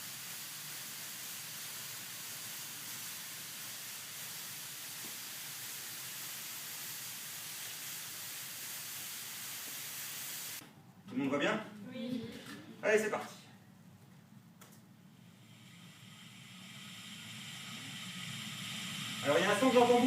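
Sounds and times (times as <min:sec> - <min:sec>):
steady hiss: 0:00.0 - 0:10.6, 0:15.1 - 0:20.0.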